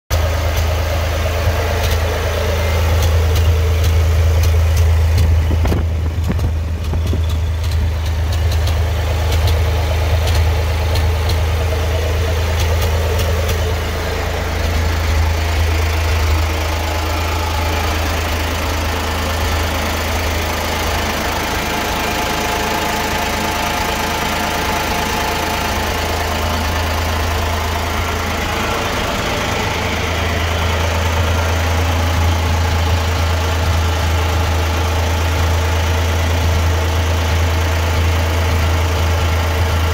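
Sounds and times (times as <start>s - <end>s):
tractor engine idling rough: 0.1s - 39.9s
sharp irregular ticks: 2.9s - 11.5s.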